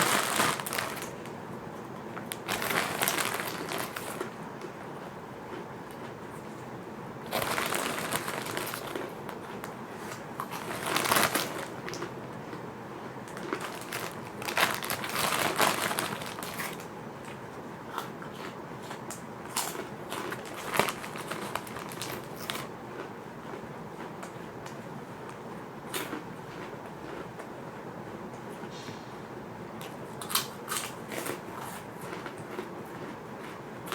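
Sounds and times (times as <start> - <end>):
crunching of fish crackers: 0.0 - 1.3, 2.3 - 4.8, 7.2 - 24.8, 25.9 - 27.3, 30.2 - 33.9
plastic packet crinkling: 0.0 - 1.3, 2.3 - 4.4, 7.3 - 9.2, 10.4 - 12.1, 13.3 - 16.9, 19.7 - 22.7.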